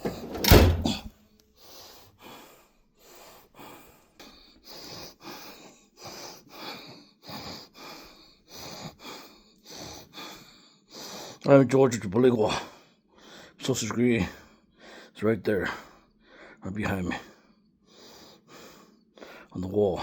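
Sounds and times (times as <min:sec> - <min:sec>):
person breathing heavily: 0:00.9 - 0:11.4, 0:17.3 - 0:19.5.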